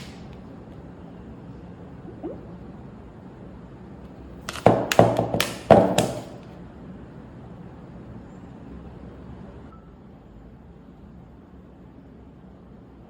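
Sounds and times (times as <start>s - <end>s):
sharp knocks: 4.5s - 6.4s.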